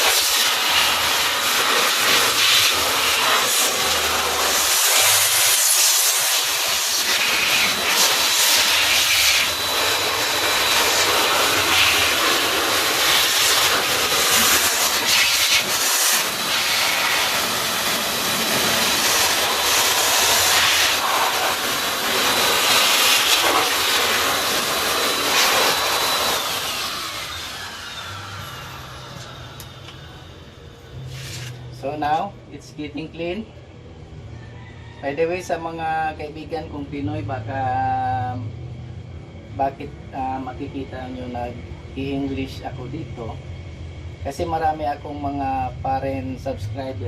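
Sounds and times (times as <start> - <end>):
electric air blower running: 0.0 - 32.2.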